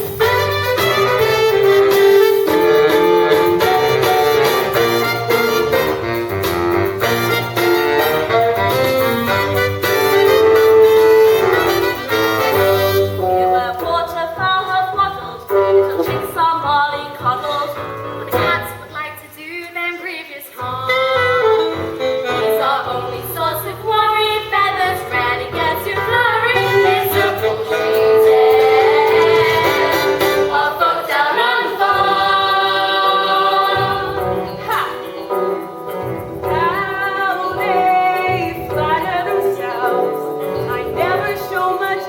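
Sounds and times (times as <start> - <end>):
instrumental accompaniment: 0.0 - 19.0, 20.6 - 42.0
group of young people singing: 24.9 - 35.1.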